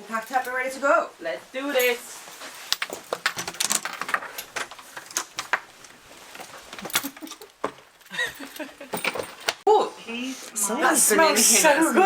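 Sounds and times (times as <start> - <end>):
small hard objects clattering: 1.8 - 9.6.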